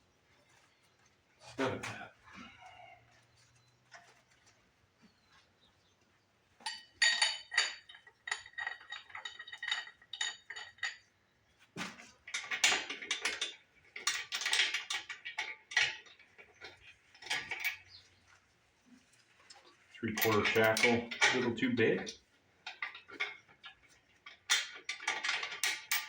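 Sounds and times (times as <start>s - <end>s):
chain clanking rattle: 6.6s - 11.2s, 11.9s - 18.0s, 19.4s - 26.0s
metal chain clinking: 6.7s - 11.2s, 12.2s - 18.0s, 20.0s - 26.0s.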